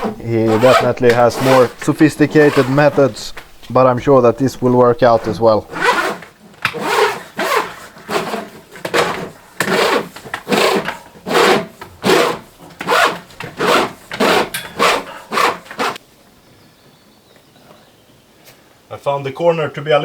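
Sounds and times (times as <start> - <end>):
rhythmic rasping strokes on wood: 0.0 - 3.2, 5.0 - 16.0.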